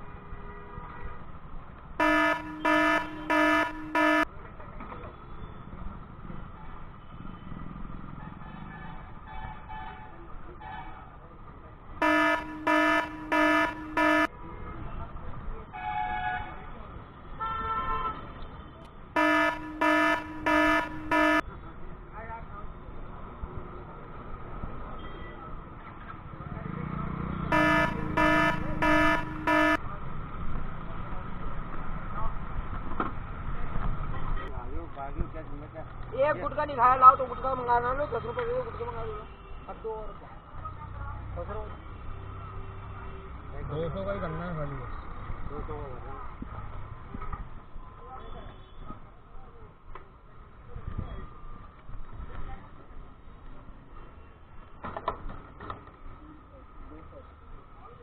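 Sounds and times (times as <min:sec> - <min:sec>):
road and wind noise: 0:00.0 - 0:58.0
scooter horn honking: 0:02.0 - 0:04.3, 0:12.0 - 0:14.3, 0:19.2 - 0:21.4, 0:27.5 - 0:29.8.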